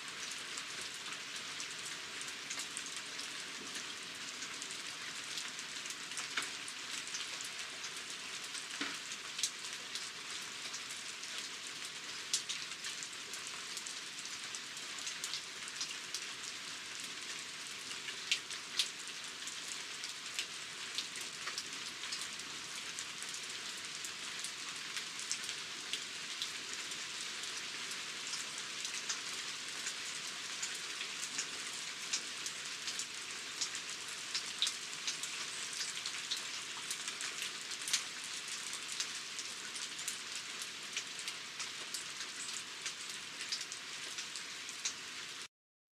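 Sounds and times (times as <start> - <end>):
rain falling: 0.0 - 45.5
raindrops ticking on hard surface: 5.4 - 7.9, 8.5 - 10.8, 30.6 - 45.0.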